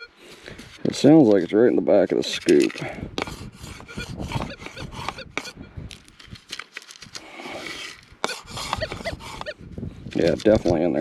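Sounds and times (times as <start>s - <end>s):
metal detector tones: 3.7s - 6.0s, 8.2s - 9.6s.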